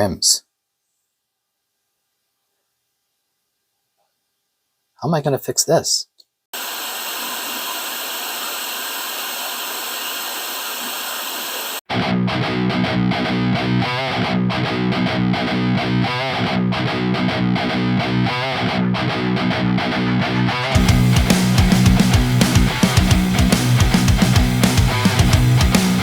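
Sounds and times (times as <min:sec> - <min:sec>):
rock music with electric guitar: 0:11.9 - 0:26.0.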